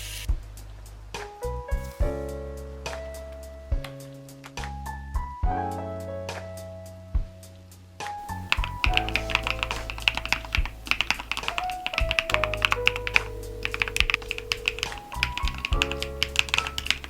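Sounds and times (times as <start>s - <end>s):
soft background music: 0.3s - 17.0s
mechanical keyboard typing: 8.2s - 17.0s.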